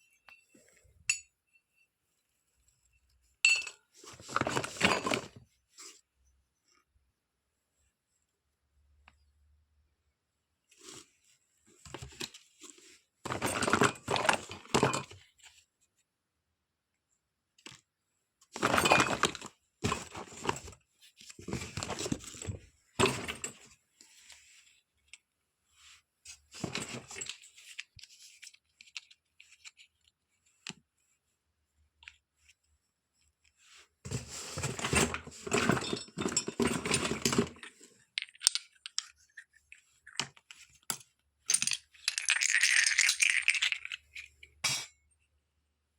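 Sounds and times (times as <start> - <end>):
plastic toy pieces clinking: 38.1 - 40.3, 41.5 - 44.5.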